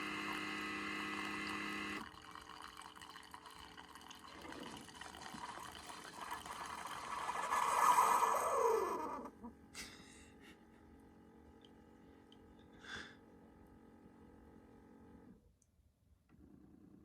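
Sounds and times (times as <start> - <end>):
water pump humming: 0.0 - 9.3
drink trickling into mug: 1.0 - 8.5.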